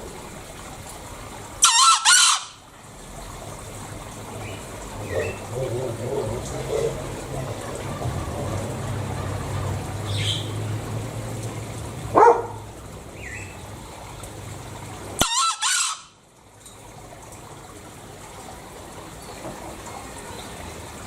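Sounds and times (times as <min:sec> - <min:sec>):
junglefowl crowing: 0:01.6 - 0:02.6, 0:04.4 - 0:10.8, 0:15.2 - 0:16.2.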